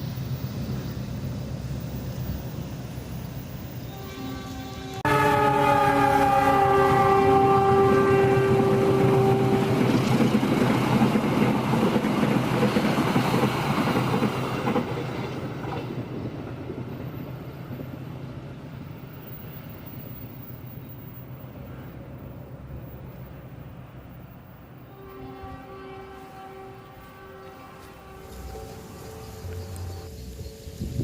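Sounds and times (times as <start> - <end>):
train on rails passing: 0.0 - 31.0
train horn: 3.8 - 10.3, 24.8 - 30.9.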